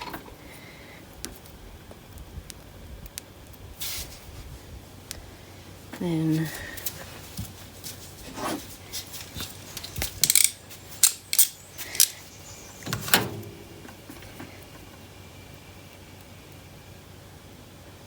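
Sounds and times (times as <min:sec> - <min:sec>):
sharp clicks and light clinks: 0:09.8 - 0:12.2.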